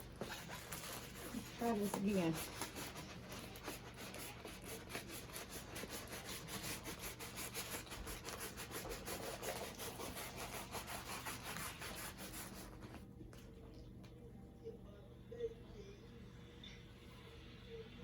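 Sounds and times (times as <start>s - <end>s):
canvas rubbing scratchily: 0.0s - 12.8s.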